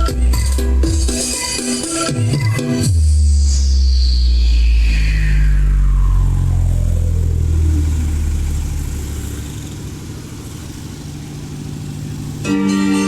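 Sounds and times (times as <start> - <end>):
falling pitch sweep: 2.8 - 9.8
heavy sustained bass tones: 2.8 - 13.0.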